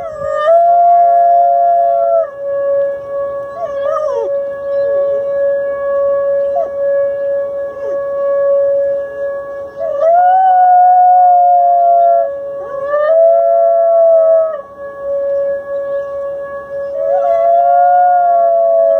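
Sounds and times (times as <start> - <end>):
dog howling: 0.0 - 2.4, 3.4 - 6.9, 9.6 - 14.7, 16.9 - 18.9
steady held tone: 0.0 - 18.8.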